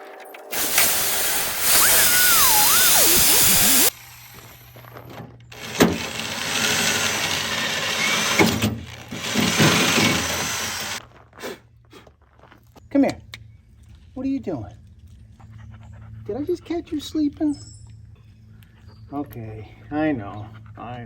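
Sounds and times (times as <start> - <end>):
wavering high squeal: 0.5 - 3.9
electric drill boring into metal: 0.5 - 11.0.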